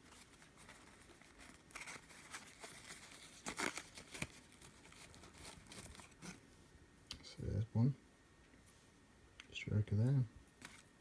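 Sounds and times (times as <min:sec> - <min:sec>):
packaging rustling and crinkling: 0:00.0 - 0:06.5, 0:10.6 - 0:11.0.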